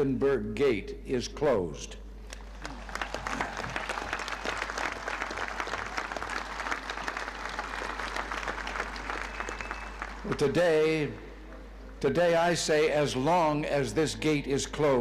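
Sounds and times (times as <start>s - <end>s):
crowd applauding: 2.3s - 11.2s.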